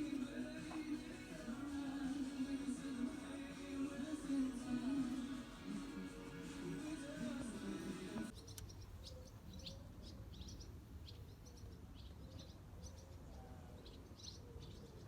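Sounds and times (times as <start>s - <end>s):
background music: 0.0s - 8.3s
small birds chirping: 0.0s - 15.0s.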